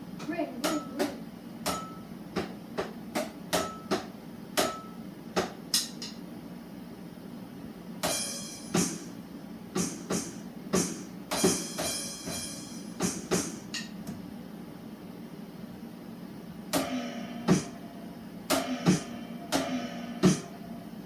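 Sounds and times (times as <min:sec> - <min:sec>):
drum hits: 0:08.0 - 0:09.2, 0:09.8 - 0:13.8, 0:16.8 - 0:17.8, 0:18.5 - 0:20.6.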